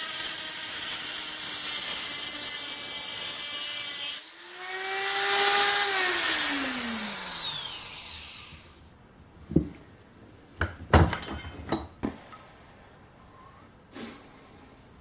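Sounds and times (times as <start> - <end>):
die grinder spinning down: 3.8 - 8.8
sharp knocks and clatters: 10.6 - 12.2.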